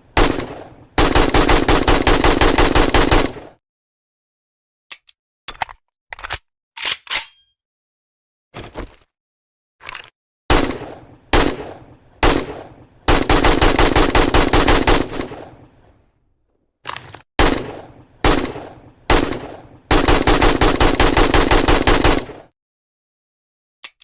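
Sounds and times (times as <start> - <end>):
automatic gunfire bursts: 0.2 - 3.5, 10.5 - 15.5, 17.4 - 22.3.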